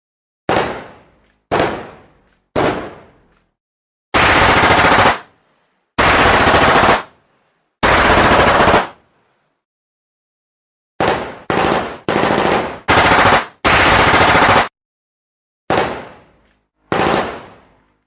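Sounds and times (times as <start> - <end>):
automatic gunfire bursts: 4.2 - 5.3, 6.0 - 7.1, 7.8 - 9.0, 11.0 - 14.7, 16.9 - 17.5.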